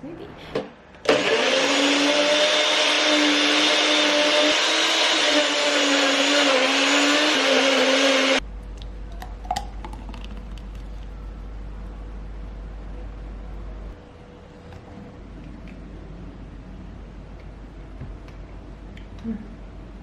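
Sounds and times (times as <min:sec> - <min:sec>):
blender running at high speed: 0:01.1 - 0:08.4.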